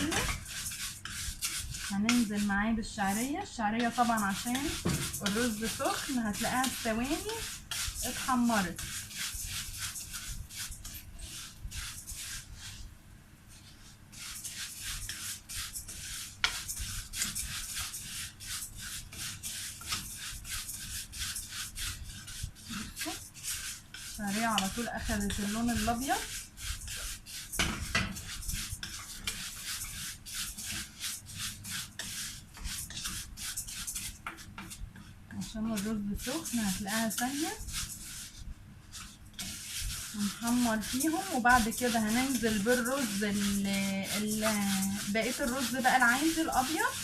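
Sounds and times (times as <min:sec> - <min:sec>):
spoon stirring and scraping pot: 0:00.0 - 0:12.9, 0:13.5 - 0:47.0.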